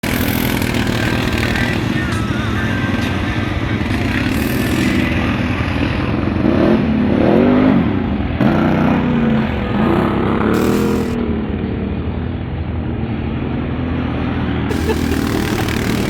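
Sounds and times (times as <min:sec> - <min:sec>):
vehicle engine revving: 0:00.0 - 0:11.3, 0:14.7 - 0:16.0.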